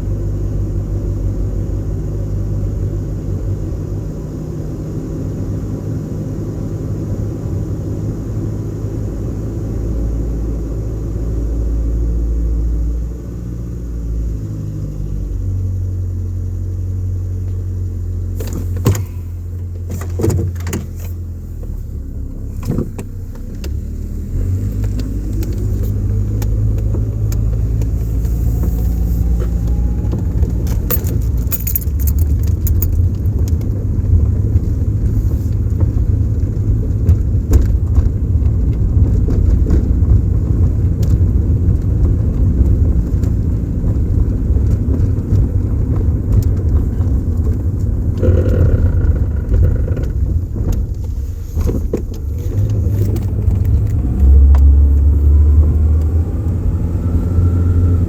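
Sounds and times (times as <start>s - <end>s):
pickup truck engine and road rumble: 0.0s - 58.0s
light rattles: 27.7s - 33.6s.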